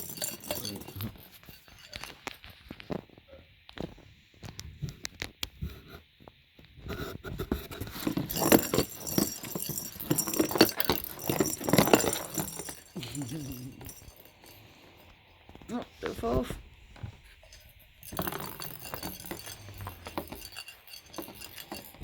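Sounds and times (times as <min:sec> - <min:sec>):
kitten scratching and scrabbling: 0:06.9 - 0:14.9.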